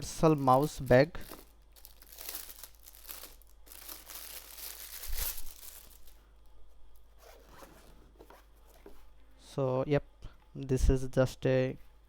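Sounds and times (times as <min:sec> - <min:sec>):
zipper pulled open: 0:07.2 - 0:07.9.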